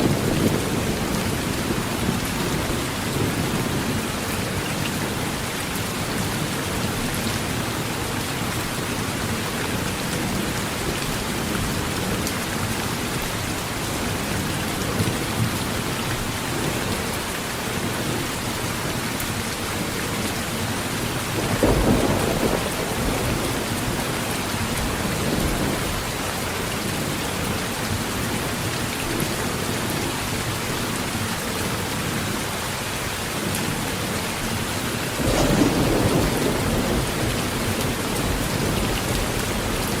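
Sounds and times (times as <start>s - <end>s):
heavy rain on a tin roof: 0.0s - 40.0s
thunder rolling: 21.4s - 24.2s, 35.2s - 39.9s.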